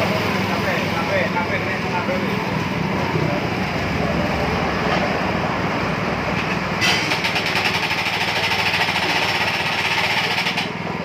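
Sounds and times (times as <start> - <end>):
winch engine running: 6.0 - 11.0
fast rattling chatter: 7.3 - 10.8.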